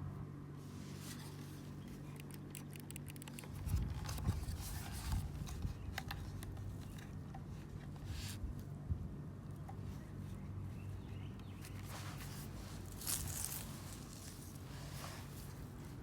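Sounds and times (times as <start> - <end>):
low steady hum: 0.0 - 16.0
sharp clicks and small knocks: 2.1 - 4.4.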